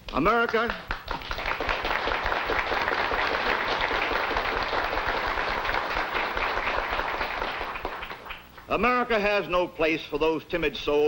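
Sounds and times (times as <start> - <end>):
audience applauding: 0.5 - 8.7.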